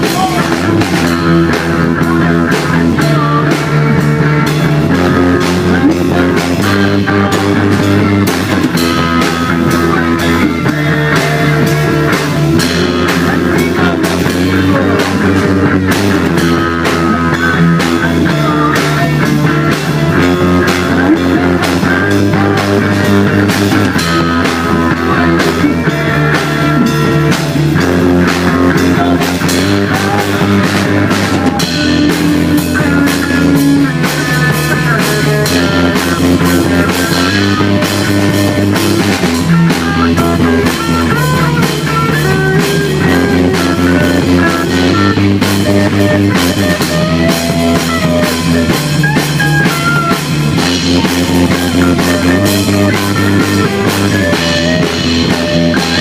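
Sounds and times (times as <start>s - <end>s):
rock music on guitar bass and drums: 0.0s - 56.0s.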